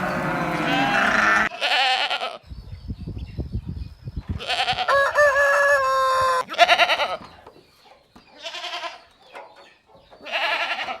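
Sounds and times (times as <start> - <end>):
livestock bleating: 0.0 - 2.4, 6.4 - 7.2, 8.4 - 9.0, 10.2 - 11.0.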